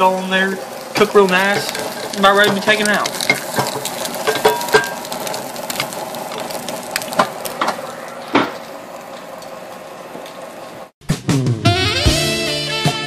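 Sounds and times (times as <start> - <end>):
sandwich sizzling in a pan: 0.0 - 10.9.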